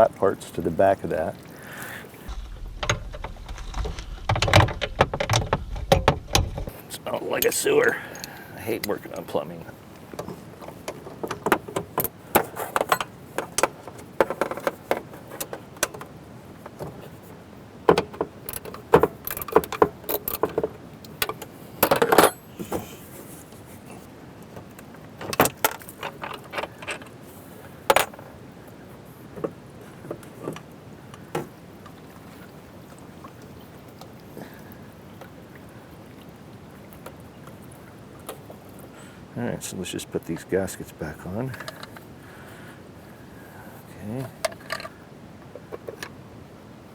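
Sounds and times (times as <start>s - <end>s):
clinks of metal valve parts: 11.3s - 13.2s.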